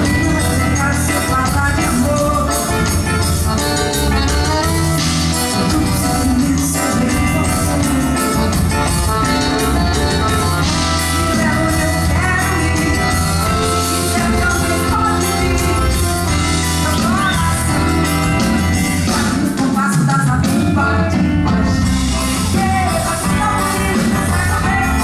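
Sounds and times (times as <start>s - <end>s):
bass: 0.0s - 25.0s
drum kit beat: 0.0s - 25.0s
person singing: 0.0s - 25.0s.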